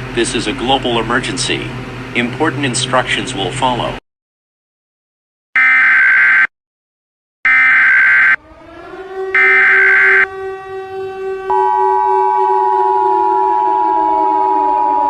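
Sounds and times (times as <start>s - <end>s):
two-tone attention signal: 9.4s - 10.3s, 11.5s - 15.0s
low steady tone: 11.4s - 15.0s.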